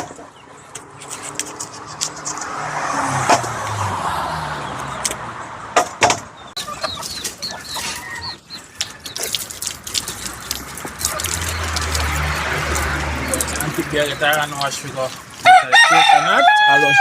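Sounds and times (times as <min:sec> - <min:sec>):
chickens peeping: 0:00.0 - 0:02.2, 0:06.4 - 0:15.4
sharp knocks: 0:05.8 - 0:06.3.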